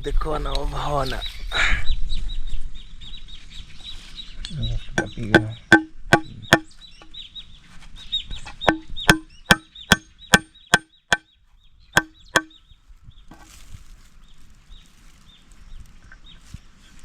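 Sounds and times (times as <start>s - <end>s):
hammer driving nails into wood: 5.0s - 6.7s, 8.7s - 11.2s, 12.0s - 12.5s.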